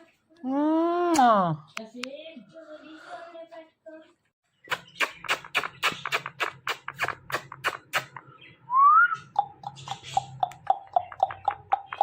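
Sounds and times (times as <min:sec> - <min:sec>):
parrot chirping and whistling: 0:07.4 - 0:12.0.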